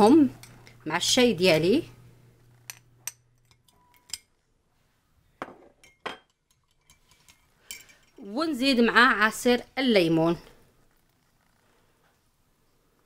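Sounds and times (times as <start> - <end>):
spoon clinking against container: 5.8 - 8.2.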